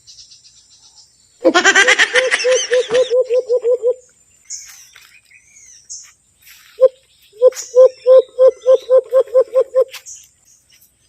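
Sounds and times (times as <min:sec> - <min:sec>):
hooting hand call: 0:02.2 - 0:04.0, 0:06.8 - 0:09.9
faint bird chirps: 0:02.6 - 0:11.0.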